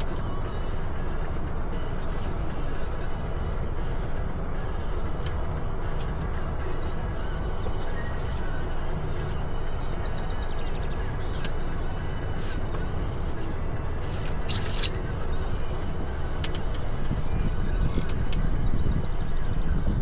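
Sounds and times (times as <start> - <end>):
wind on microphone: 16.9 - 20.0.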